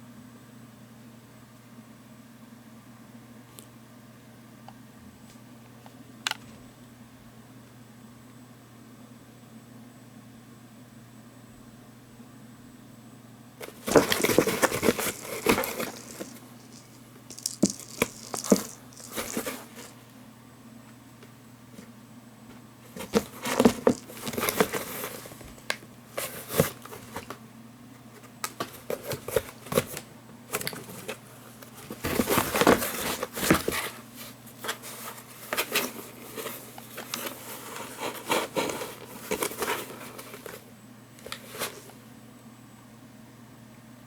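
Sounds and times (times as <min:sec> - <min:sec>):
kitten playing with a ball: 0:13.6 - 0:19.9, 0:22.9 - 0:27.4.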